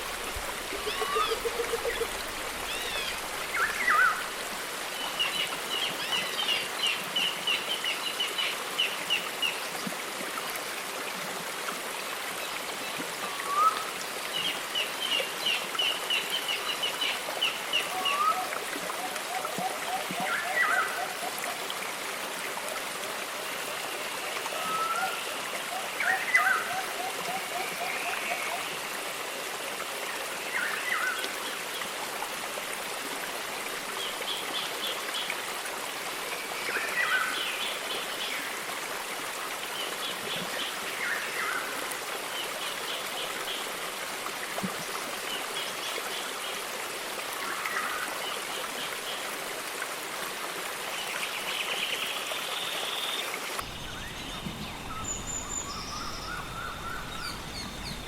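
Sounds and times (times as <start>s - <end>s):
running water stream: 0.0s - 58.0s
chirping bird calls: 0.8s - 3.2s, 53.6s - 58.0s.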